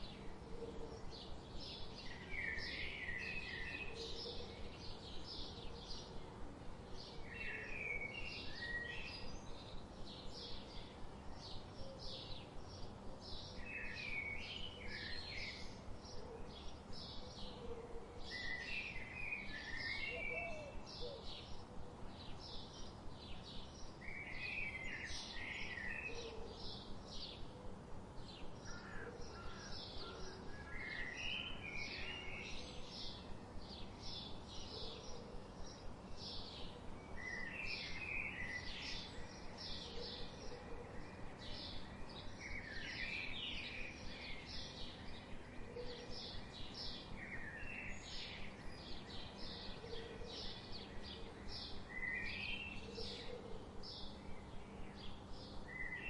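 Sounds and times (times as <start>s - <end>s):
small birds chirping: 18.2s - 56.0s.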